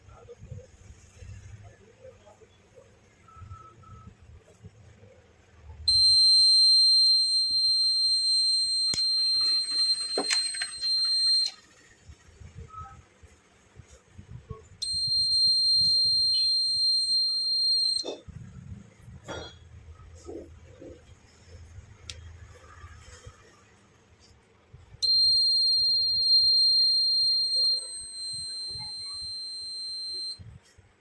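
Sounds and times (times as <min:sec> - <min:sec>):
high-pitched alarm buzzer: 0:05.9 - 0:11.5, 0:14.8 - 0:18.1, 0:25.0 - 0:30.4
clicks: 0:07.2 - 0:11.6.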